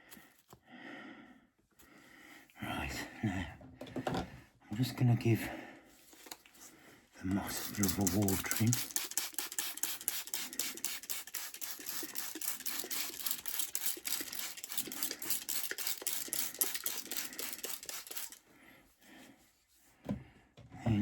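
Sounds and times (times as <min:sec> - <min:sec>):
spray bottle squirts: 0:07.5 - 0:18.4.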